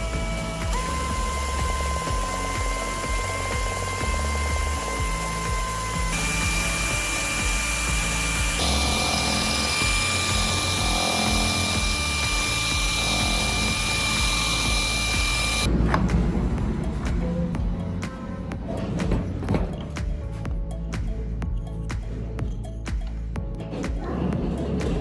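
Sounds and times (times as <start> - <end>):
power tool whining: 0.0 - 15.7
sharp clicks: 0.0 - 15.7.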